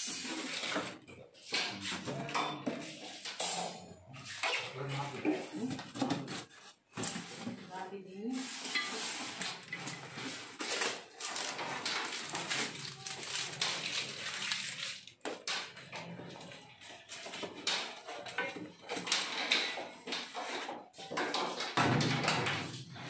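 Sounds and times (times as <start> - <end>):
dishes and utensils clattering: 0.1 - 6.4, 8.6 - 23.0.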